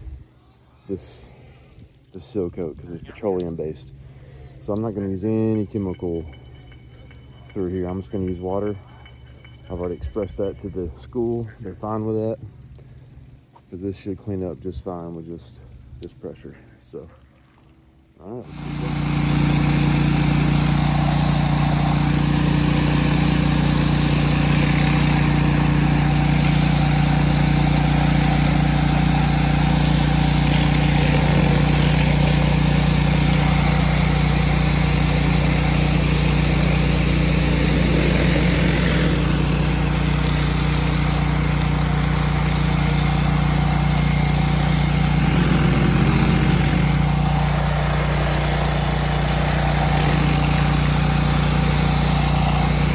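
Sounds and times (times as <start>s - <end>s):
pressure washer engine hum: 18.2s - 52.9s
water spray hissing: 18.4s - 52.9s.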